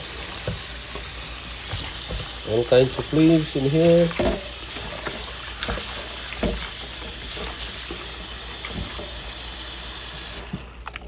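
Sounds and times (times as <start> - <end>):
tap running water: 0.0 - 11.0.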